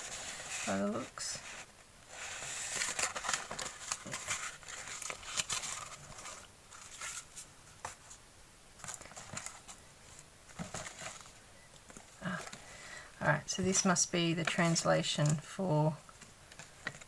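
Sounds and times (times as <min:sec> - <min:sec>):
paper rustling: 0:00.0 - 0:08.2, 0:08.8 - 0:12.7.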